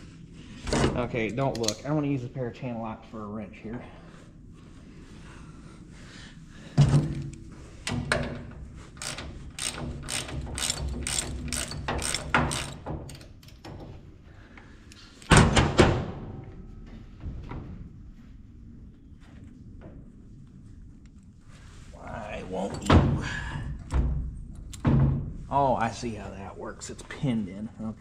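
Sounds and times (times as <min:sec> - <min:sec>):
pliers clicking on nut: 0:09.0 - 0:13.3.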